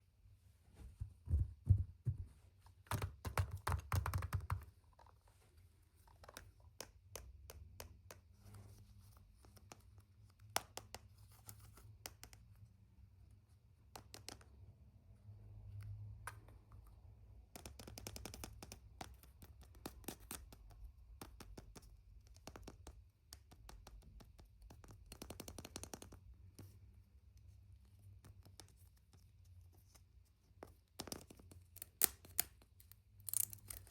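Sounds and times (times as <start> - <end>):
plastic packaging clicks and taps: 2.8 - 4.7.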